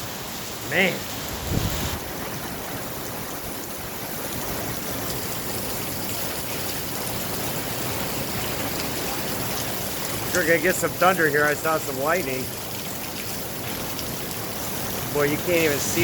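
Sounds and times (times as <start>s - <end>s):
heavy rain pouring: 0.0s - 16.0s.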